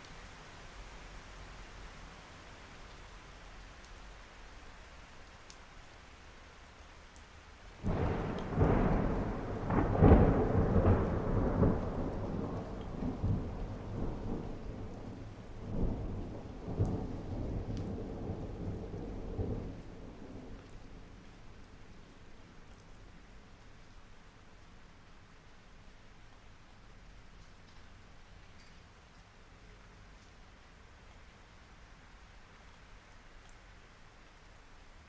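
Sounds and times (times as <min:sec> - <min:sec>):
steady rain: 0:00.0 - 0:35.0
thunder rumbling: 0:07.8 - 0:21.2.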